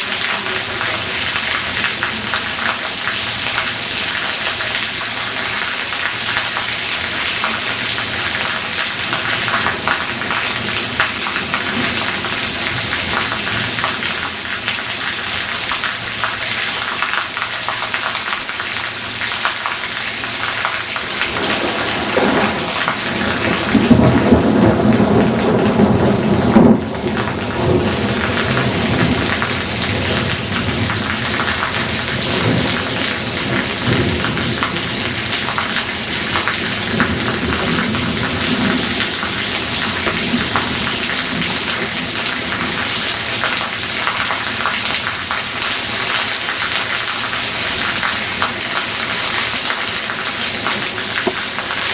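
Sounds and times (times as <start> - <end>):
heavy rain pouring: 0.0 - 51.9
rolling thunder: 21.1 - 35.3.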